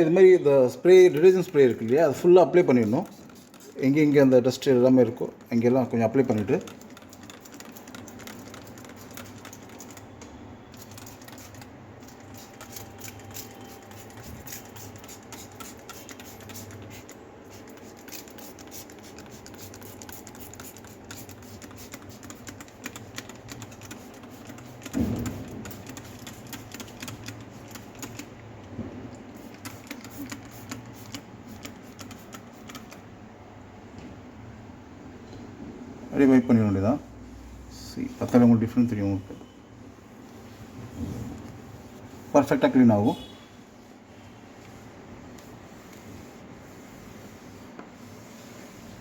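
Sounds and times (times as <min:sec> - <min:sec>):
thump: 0:24.9 - 0:25.6.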